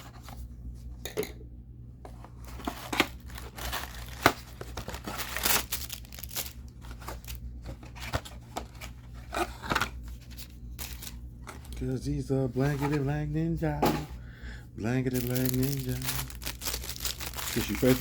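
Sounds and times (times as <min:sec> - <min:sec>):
cardboard packaging crinkled and torn: 0:02.6 - 0:11.8, 0:15.0 - 0:18.0.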